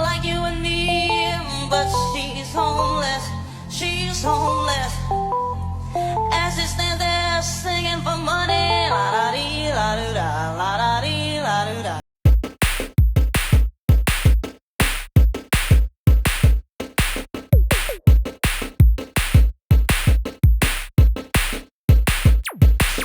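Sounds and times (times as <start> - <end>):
electronic music with drum beat: 12.3 - 23.0.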